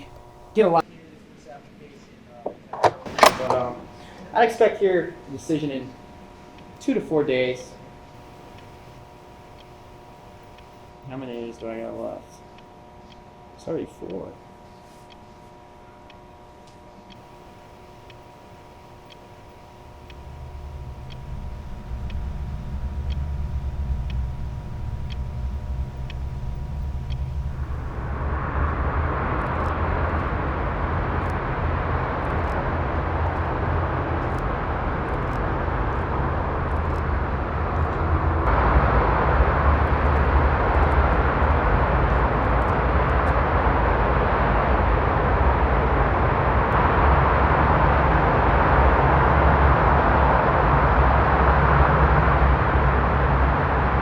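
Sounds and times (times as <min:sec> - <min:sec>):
vehicle rumble: 0:00.0 - 0:00.8, 0:02.5 - 0:06.9, 0:17.2 - 0:54.0.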